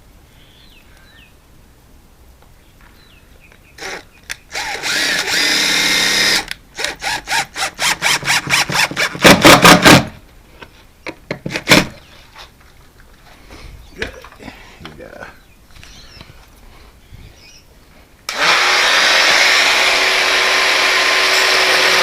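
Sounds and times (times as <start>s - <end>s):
power drill whining: 3.8s - 10.0s, 18.3s - 22.0s.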